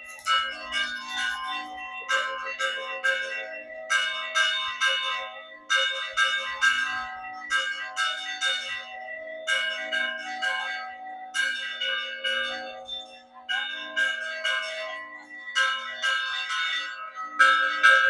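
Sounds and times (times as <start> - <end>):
church bells rung by hand: 0.0 - 18.0.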